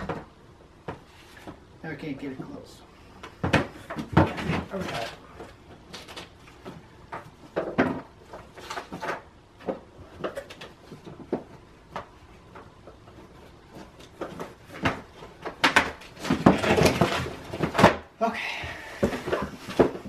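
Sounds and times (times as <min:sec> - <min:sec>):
packaging knocks scrapes and rustles: 0:03.4 - 0:18.0.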